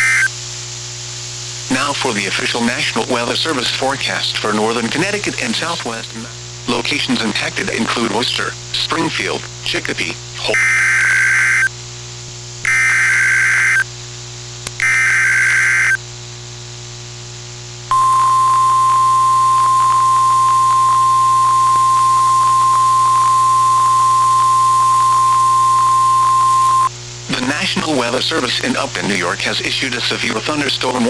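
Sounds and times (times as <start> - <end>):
steady warning alarm tone: 10.5 - 11.7, 12.7 - 13.8, 14.8 - 16.0, 17.9 - 26.9.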